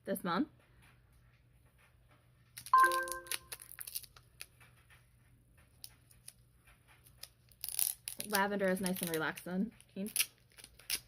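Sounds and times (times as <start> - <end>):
packaging crinkling: 2.6 - 4.5, 7.0 - 11.0.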